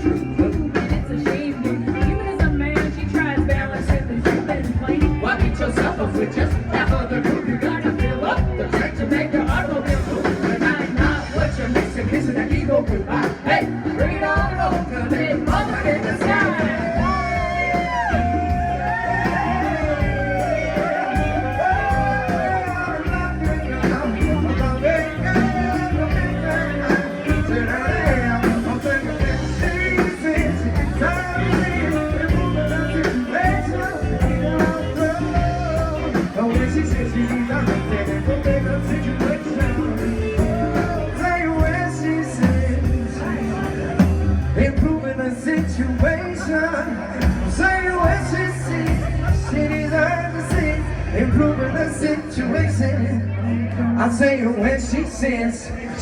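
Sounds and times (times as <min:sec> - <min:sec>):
drums beating: 0:00.0 - 0:46.5, 0:47.1 - 0:51.6
bass line: 0:00.0 - 0:56.0
live rock band playing: 0:00.0 - 0:56.0
wavering lead melody: 0:13.5 - 0:44.6.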